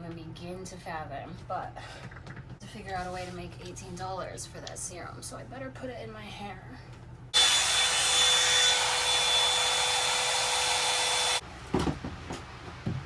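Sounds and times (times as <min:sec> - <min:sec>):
hair dryer blowing: 0:07.4 - 0:11.4.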